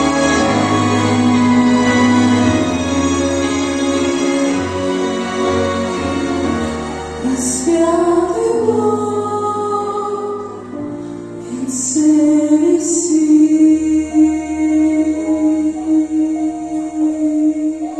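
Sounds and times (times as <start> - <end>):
instrumental accompaniment: 0.0 - 17.9
women singing a hymn: 7.2 - 10.7.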